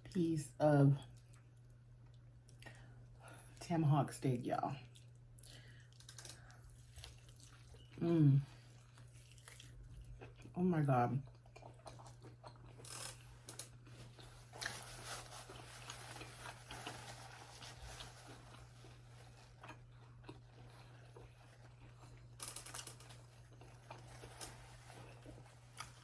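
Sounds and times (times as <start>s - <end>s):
low electrical hum: 0.0s - 26.0s
person chewing: 4.8s - 10.5s, 11.2s - 26.0s.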